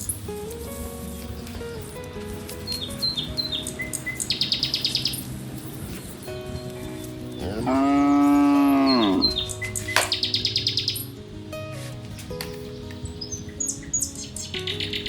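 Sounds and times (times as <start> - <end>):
soft music with chirping: 0.0 - 15.0
cow mooing: 7.4 - 9.5.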